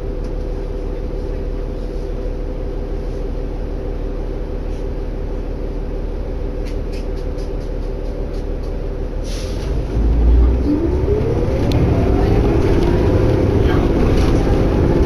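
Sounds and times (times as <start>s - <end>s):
bus engine droning: 0.0s - 15.0s
rising engine whine: 7.8s - 15.0s.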